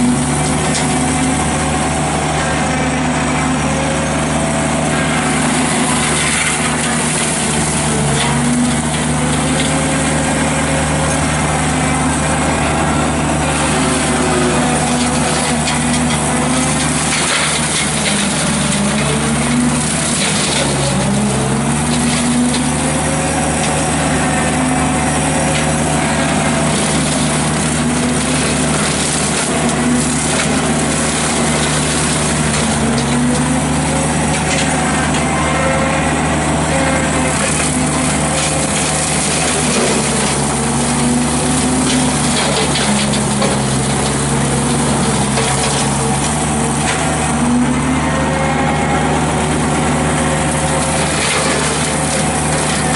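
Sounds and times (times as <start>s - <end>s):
skid steer engine running hard: 0.0s - 52.9s
woody stems cracking: 5.8s - 35.7s.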